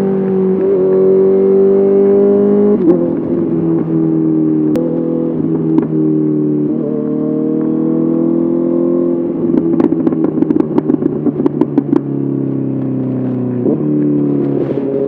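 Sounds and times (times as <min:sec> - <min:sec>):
motorcycle engine running: 0:00.0 - 0:15.0
exhaust pops and crackles: 0:09.5 - 0:15.0.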